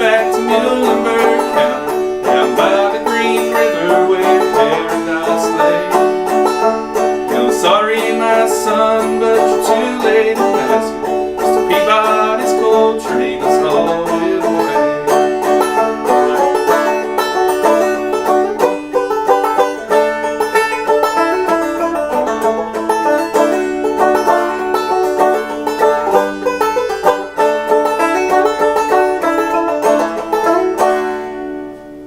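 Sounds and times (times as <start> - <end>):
banjo playing: 0.0 - 32.0.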